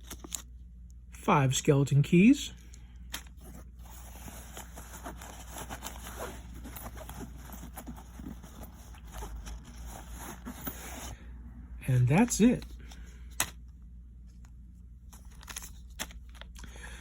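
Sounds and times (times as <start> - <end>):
soft rustling of bag: 3.4 - 11.2.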